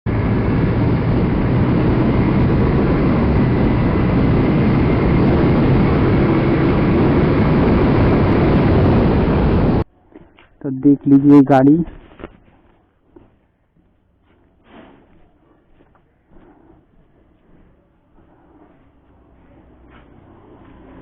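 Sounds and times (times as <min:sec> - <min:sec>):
wind noise on microphone: 0:00.1 - 0:09.8
motorcycle engine drone: 0:00.1 - 0:09.9, 0:13.2 - 0:21.0.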